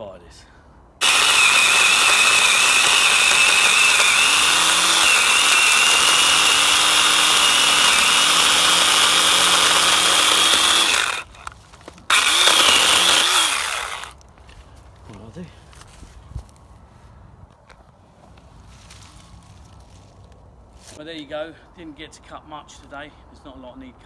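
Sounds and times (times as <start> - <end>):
pole saw high whine: 1.0 - 11.5, 12.1 - 14.1.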